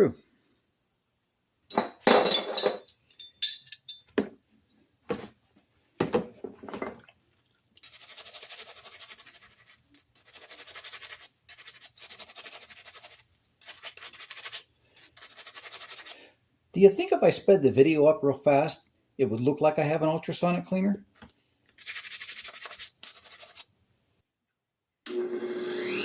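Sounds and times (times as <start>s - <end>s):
small metal parts clinking: 1.7s - 4.2s
brush scrubbing: 7.8s - 16.2s, 21.8s - 23.7s.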